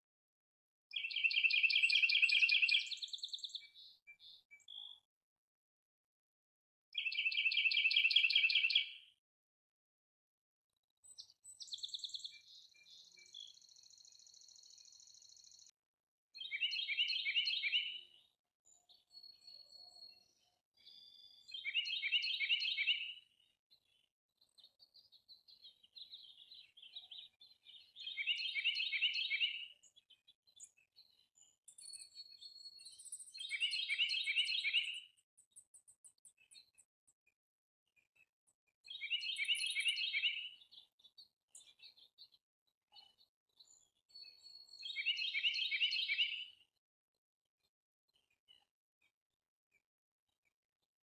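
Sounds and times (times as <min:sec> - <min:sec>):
songbird singing: 0:00.9 - 0:05.0, 0:06.9 - 0:09.1, 0:11.0 - 0:15.7, 0:16.4 - 0:36.9, 0:38.8 - 0:42.4, 0:43.0 - 0:46.7.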